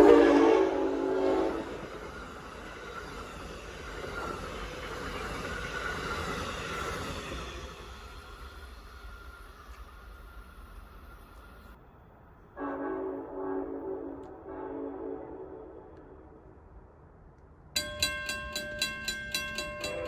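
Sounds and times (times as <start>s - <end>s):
train air horn chord: 0.0s - 2.0s, 12.6s - 16.3s
train rumbling by: 0.0s - 20.0s.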